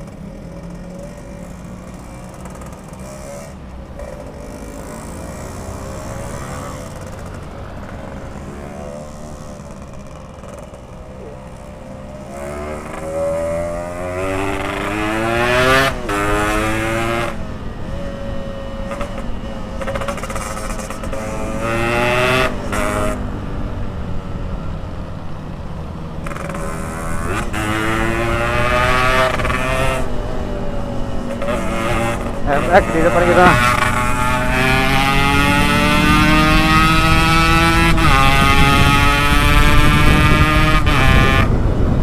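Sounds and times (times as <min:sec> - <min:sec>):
two-stroke motorcycle engine revving: 0:00.0 - 0:23.7, 0:26.2 - 0:42.0
rush of wind: 0:02.4 - 0:42.0.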